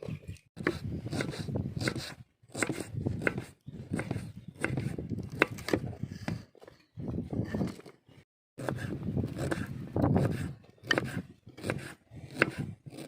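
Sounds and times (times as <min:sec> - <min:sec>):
knife cutting on wooden board: 0:00.6 - 0:06.4, 0:08.6 - 0:13.0.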